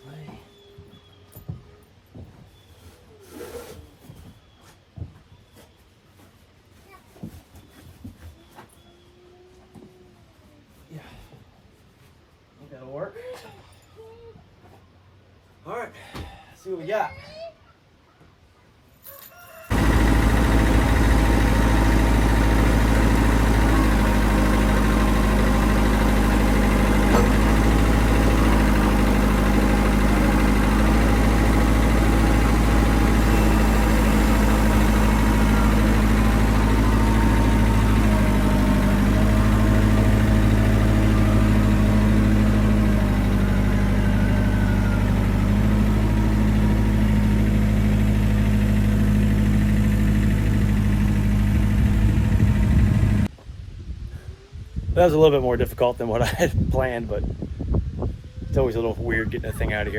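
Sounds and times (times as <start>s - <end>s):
forklift engine running: 19.7s - 53.3s.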